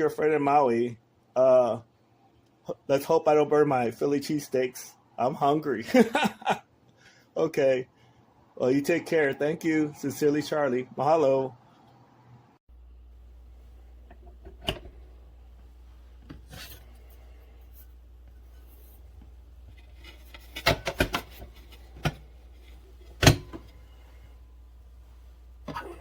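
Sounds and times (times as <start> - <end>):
steady low hum: 12.7 - 26.0
knocks and clatter of handling: 14.1 - 15.1, 16.2 - 23.8.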